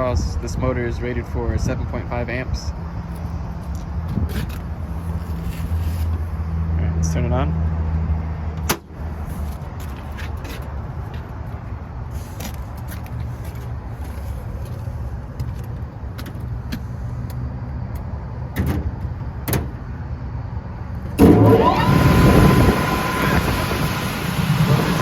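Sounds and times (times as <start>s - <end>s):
blower motor spinning up: 21.2s - 25.0s.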